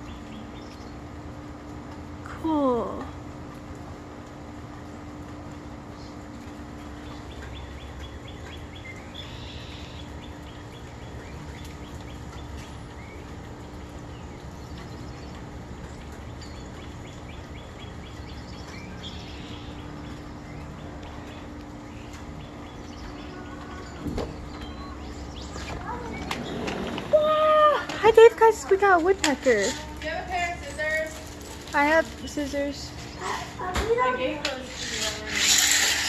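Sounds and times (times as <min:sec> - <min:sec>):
birds chipping: 0:00.0 - 0:01.3, 0:05.8 - 0:27.1, 0:28.0 - 0:36.0
steady low hum: 0:00.0 - 0:36.0
bright bird calls: 0:06.9 - 0:27.0.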